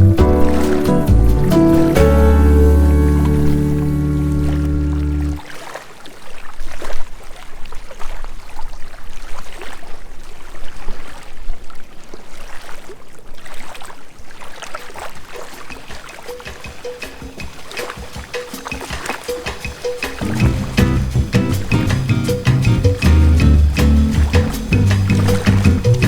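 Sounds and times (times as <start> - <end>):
background music: 0.0 - 5.4, 16.4 - 26.0
small waves lapping at shore: 0.4 - 20.6.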